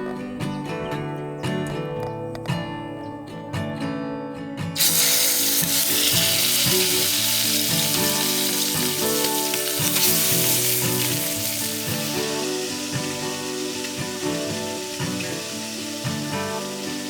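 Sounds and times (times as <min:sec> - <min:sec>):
acoustic guitar music: 0:00.0 - 0:17.0
food sizzling in a hot pan: 0:04.8 - 0:17.0.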